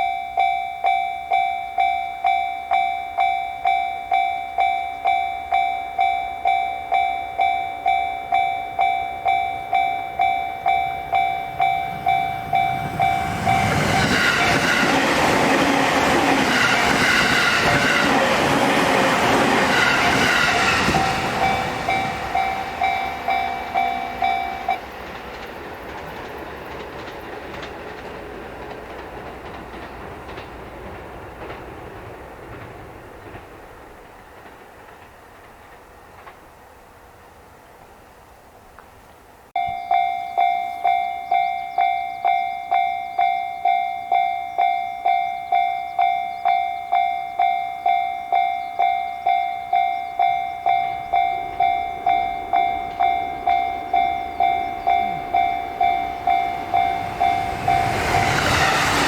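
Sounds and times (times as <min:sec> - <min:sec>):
level crossing warning bell ringing: 0:00.0 - 0:25.2, 0:39.6 - 0:59.0
train passing with clacking wheels: 0:00.0 - 0:59.0.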